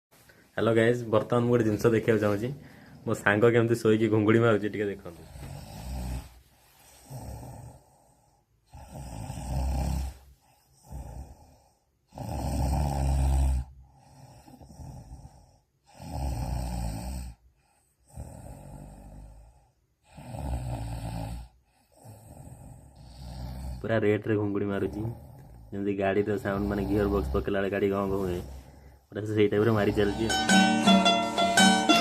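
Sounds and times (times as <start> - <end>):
soft breathing: 1.8 - 3.4, 5.0 - 9.1, 24.9 - 30.2
person snoring heavily: 5.2 - 24.0, 24.8 - 32.0.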